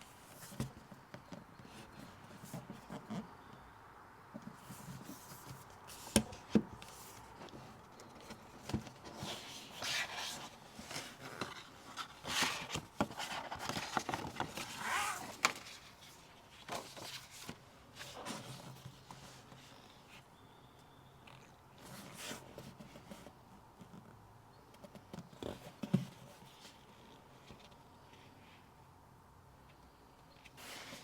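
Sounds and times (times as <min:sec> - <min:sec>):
packaging crinkling and rustling: 0:08.2 - 0:18.8.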